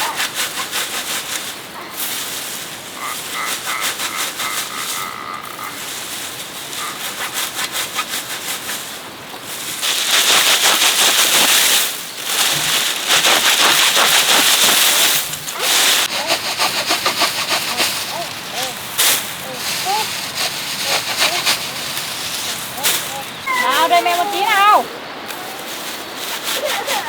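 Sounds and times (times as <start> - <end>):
hand saw cutting: 0.0 - 1.6, 6.7 - 8.9, 9.9 - 11.7, 12.4 - 23.3.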